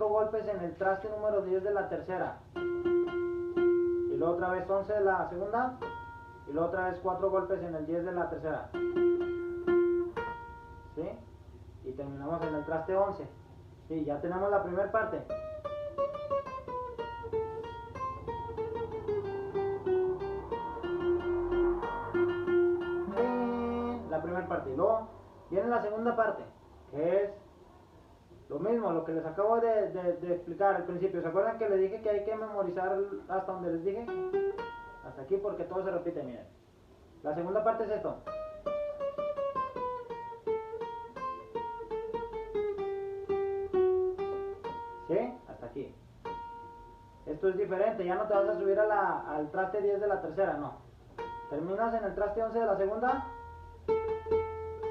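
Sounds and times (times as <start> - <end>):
guitar picking a descending melody: 1.0 - 13.7, 14.4 - 25.0, 32.6 - 35.4, 38.2 - 45.5, 46.2 - 48.6, 51.1 - 54.9.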